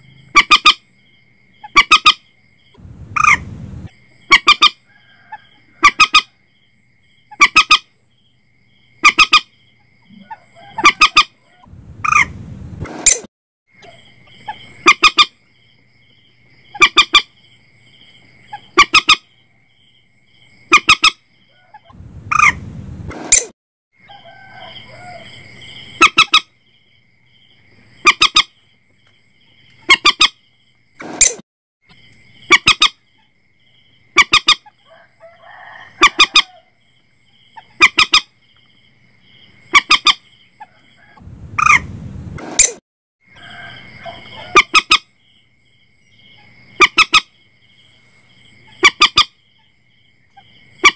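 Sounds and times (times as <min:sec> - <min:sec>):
moorhen honking calls: 0:00.3 - 0:00.8, 0:01.6 - 0:02.2, 0:03.2 - 0:03.4, 0:04.3 - 0:04.8, 0:05.8 - 0:06.3, 0:07.3 - 0:07.9, 0:09.0 - 0:09.5, 0:10.1 - 0:12.3, 0:13.8 - 0:15.4, 0:16.7 - 0:17.3, 0:18.5 - 0:19.3, 0:20.7 - 0:22.6, 0:26.0 - 0:26.5, 0:28.0 - 0:28.5, 0:29.8 - 0:30.4, 0:34.1 - 0:34.7, 0:36.0 - 0:36.6, 0:43.5 - 0:45.1, 0:46.8 - 0:47.3, 0:48.7 - 0:49.4.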